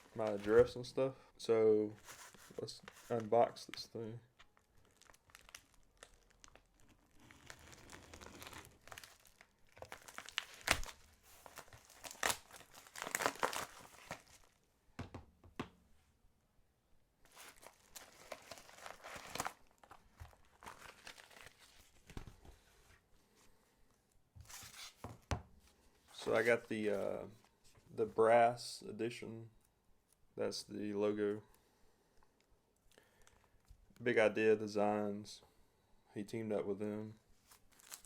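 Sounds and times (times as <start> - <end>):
package wrapping tearing: 4.5 - 14.6, 17.3 - 21.8, 37.5 - 38.0.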